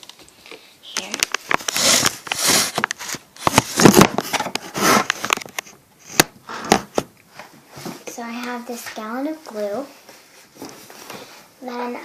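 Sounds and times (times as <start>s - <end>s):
plastic jug knocking and rustling: 1.0s - 5.6s.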